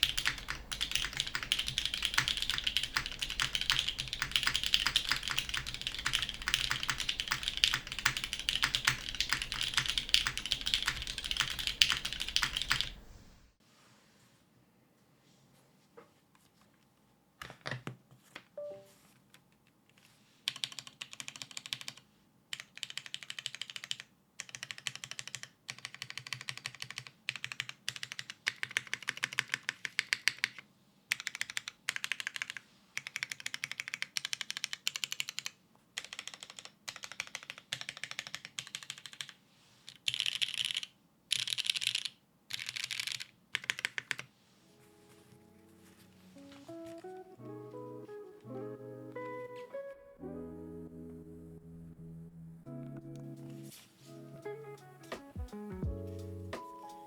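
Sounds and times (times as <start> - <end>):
mechanical keyboard typing: 0.0 - 13.0, 20.5 - 44.3.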